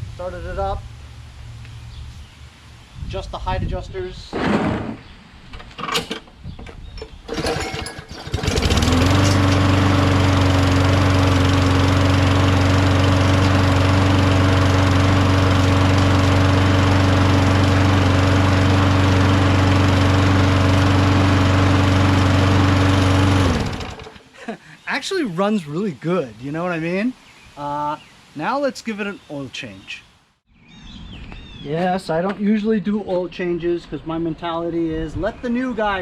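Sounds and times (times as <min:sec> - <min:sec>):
lawn mower engine running: 0:07.2 - 0:24.6.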